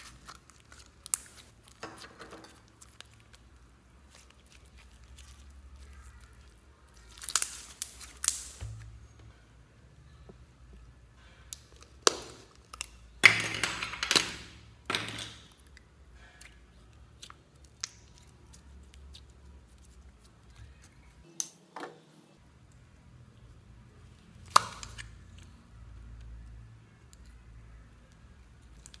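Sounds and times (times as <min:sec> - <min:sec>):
slime crackling and popping: 0:00.0 - 0:01.8, 0:02.5 - 0:09.1, 0:11.5 - 0:14.6, 0:15.2 - 0:21.2, 0:24.4 - 0:25.6.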